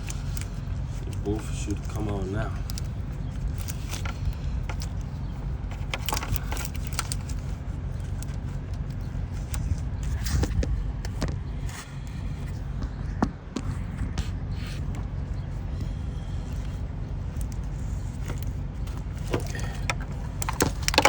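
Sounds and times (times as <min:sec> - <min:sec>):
steady low rumble: 0:00.0 - 0:21.0.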